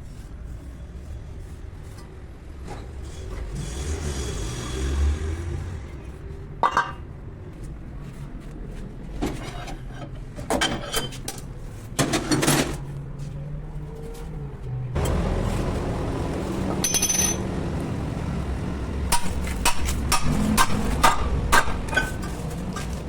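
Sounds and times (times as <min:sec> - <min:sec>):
metal tools clinking: 0:16.8 - 0:17.5.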